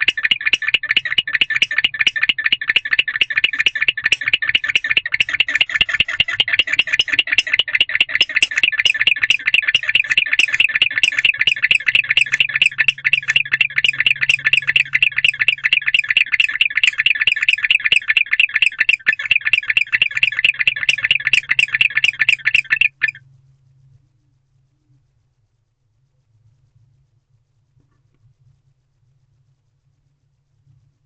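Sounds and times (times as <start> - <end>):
owl chirping: 0.0 - 23.2.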